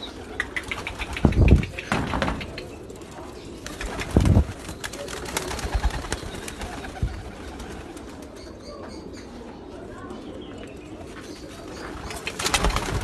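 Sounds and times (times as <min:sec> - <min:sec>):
pigeons cooing: 0:00.0 - 0:13.0
sharp clicks: 0:00.4 - 0:02.8.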